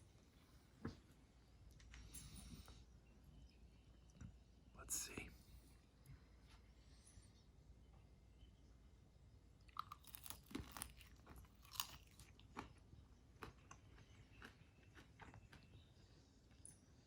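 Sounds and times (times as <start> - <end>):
person chewing with crunches: 9.6 - 16.6.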